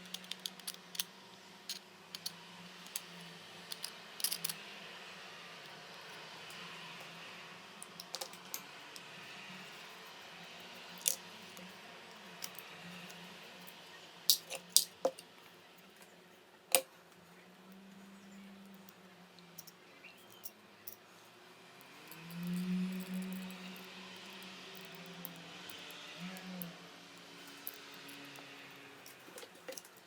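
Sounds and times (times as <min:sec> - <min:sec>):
metal parts clinking: 0:00.0 - 0:01.1, 0:01.7 - 0:04.6, 0:07.8 - 0:08.6, 0:12.4 - 0:13.2, 0:14.3 - 0:15.2, 0:29.0 - 0:30.0.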